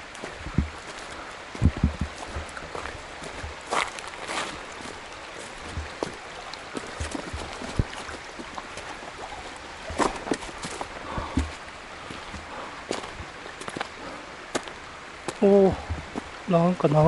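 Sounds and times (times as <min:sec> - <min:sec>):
mountain stream rushing: 0:00.0 - 0:17.0
sharp knocks and crunches: 0:01.6 - 0:02.8.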